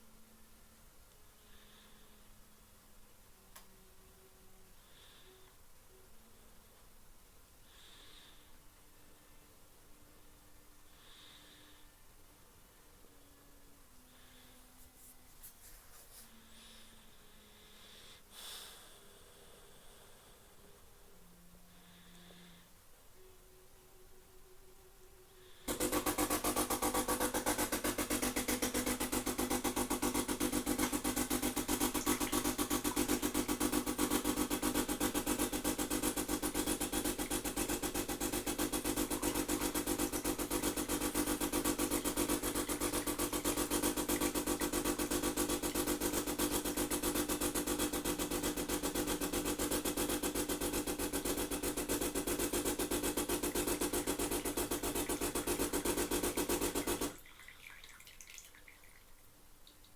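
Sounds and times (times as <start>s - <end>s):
coffee machine pulsing buzz: 25.6s - 57.2s.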